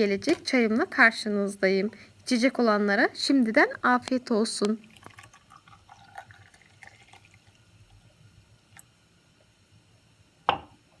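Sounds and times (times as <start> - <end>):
tea trickling and dripping: 4.2 - 8.9.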